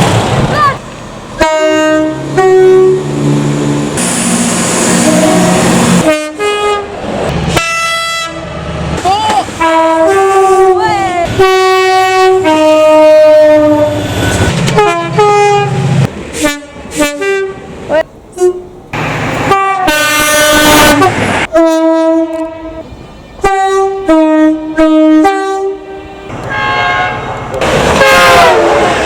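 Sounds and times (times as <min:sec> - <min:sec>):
low train rumble: 0:00.0 - 0:29.0
locomotive air horn blasts: 0:01.4 - 0:03.1, 0:04.0 - 0:06.9, 0:07.5 - 0:08.6, 0:09.6 - 0:17.6, 0:19.4 - 0:22.8, 0:23.4 - 0:29.0.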